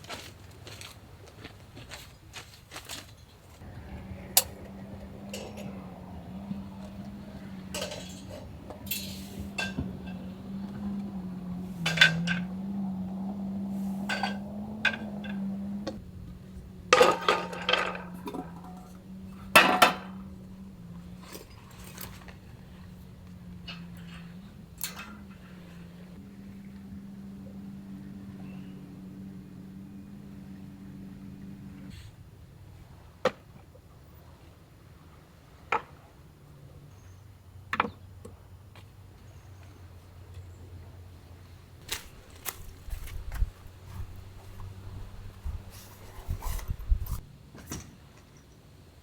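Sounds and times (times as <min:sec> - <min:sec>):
steady low hum: 0:03.6 - 0:32.2
metal cookware clinking: 0:03.7 - 0:16.0, 0:16.7 - 0:26.2.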